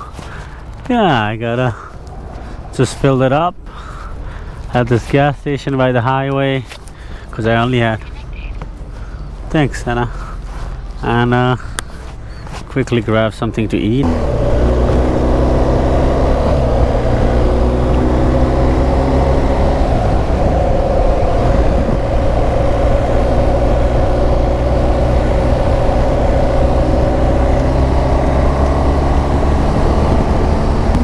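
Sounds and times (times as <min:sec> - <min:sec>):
motorcycle engine cruising: 0:14.0 - 0:31.0.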